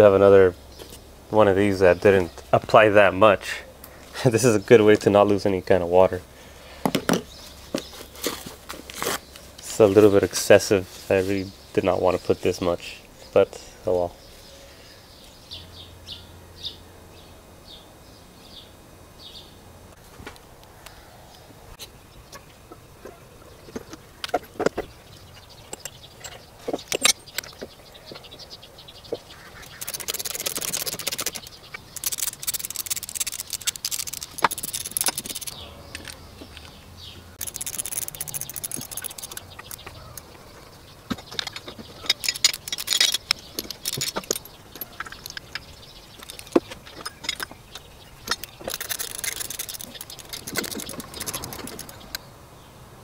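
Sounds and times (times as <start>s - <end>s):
metal tools clinking: 23.6s - 28.2s, 29.6s - 36.8s, 37.4s - 52.2s
ratchet rasping clicks: 29.6s - 36.8s, 37.4s - 40.4s, 41.1s - 52.2s.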